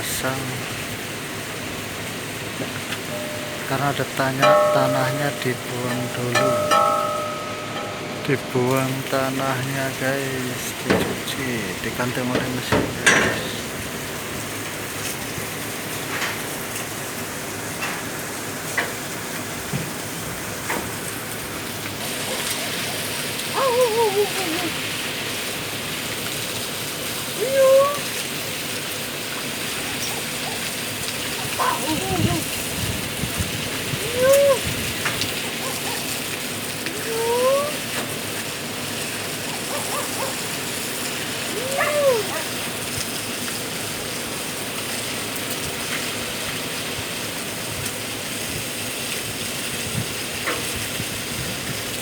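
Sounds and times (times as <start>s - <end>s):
light knocks: 10.9s - 11.4s.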